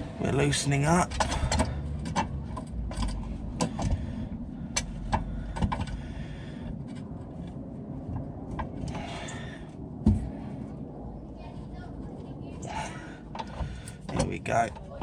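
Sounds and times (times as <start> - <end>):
low rumble: 0.0 - 15.0
sharp clicks and knocks of tools: 1.1 - 4.0, 4.7 - 6.0.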